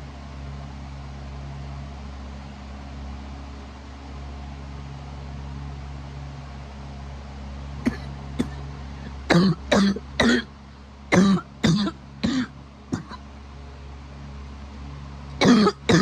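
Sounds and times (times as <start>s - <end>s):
steady low hum: 0.0s - 16.0s
person coughing: 7.8s - 8.6s, 9.3s - 10.5s, 11.1s - 13.2s, 15.4s - 16.0s.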